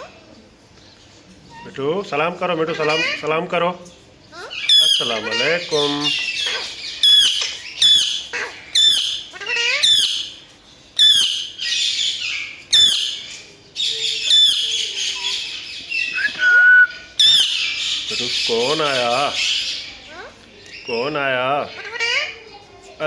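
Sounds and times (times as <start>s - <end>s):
parrot squawking: 2.6s - 3.4s, 4.3s - 10.4s, 11.0s - 20.3s, 21.5s - 22.4s.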